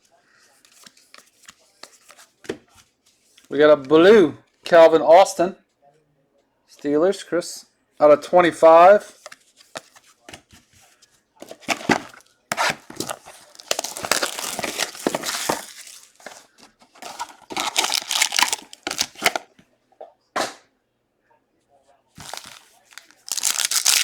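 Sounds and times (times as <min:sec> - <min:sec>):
wrapper crinkling and tearing: 0:12.6 - 0:19.5, 0:22.2 - 0:24.0.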